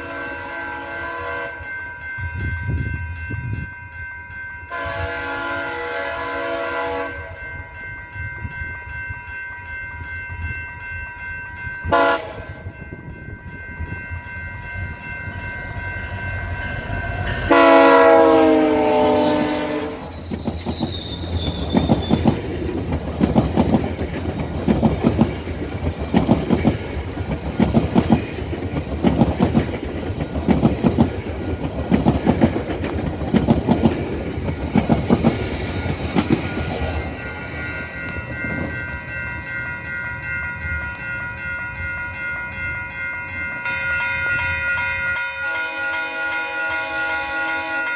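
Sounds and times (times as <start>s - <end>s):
train horn chord: 0.0s - 1.7s, 4.7s - 7.4s, 11.9s - 12.7s, 17.0s - 20.2s, 45.4s - 47.9s
train wheels clattering on rails: 17.4s - 39.6s.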